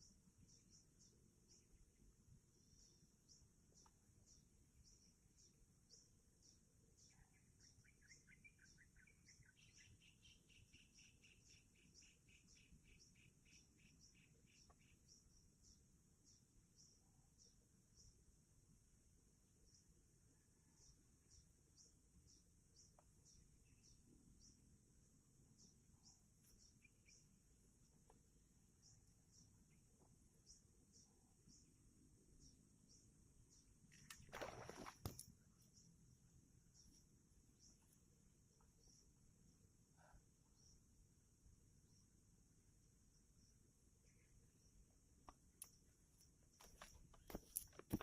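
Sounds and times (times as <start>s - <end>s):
lower bird chirps: 2.5s - 18.2s, 25.5s - 28.1s.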